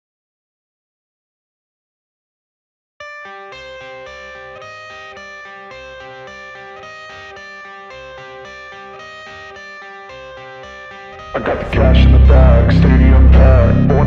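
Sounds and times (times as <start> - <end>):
guitar-led instrumental music: 3.0 - 14.0.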